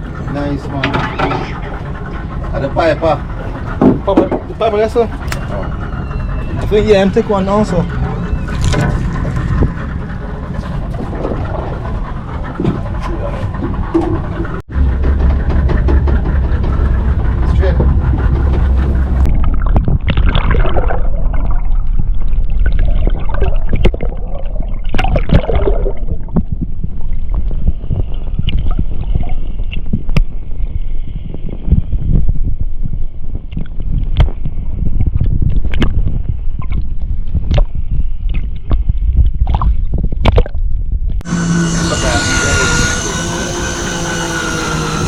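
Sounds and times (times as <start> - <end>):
water sloshing against boat: 0.0 - 31.0
low rumble: 0.0 - 45.0.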